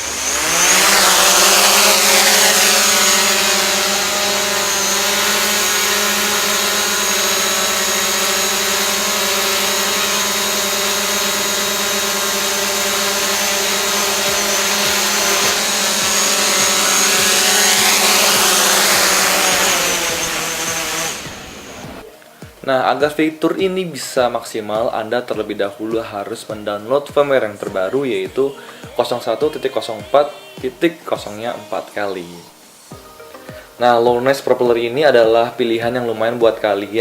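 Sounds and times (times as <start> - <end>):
drone buzzing hum: 0.0 - 22.6.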